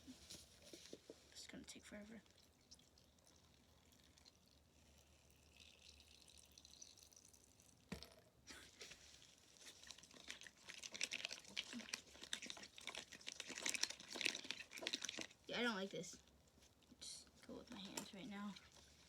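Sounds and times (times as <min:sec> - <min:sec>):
sticky slime crackling: 0:09.8 - 0:16.1.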